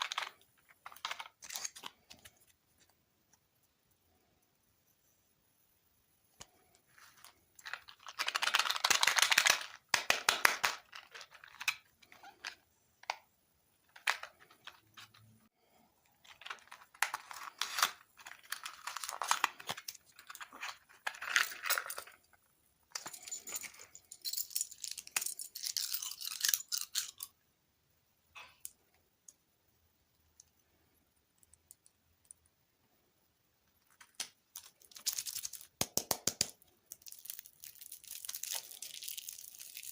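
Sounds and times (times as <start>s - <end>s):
packaging crinkling: 16.2s - 21.7s, 36.9s - 39.9s.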